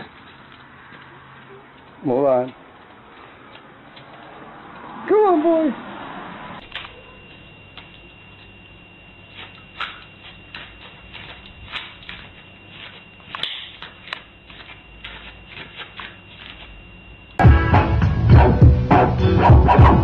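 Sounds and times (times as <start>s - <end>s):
faint high whine: 6.6s - 17.4s.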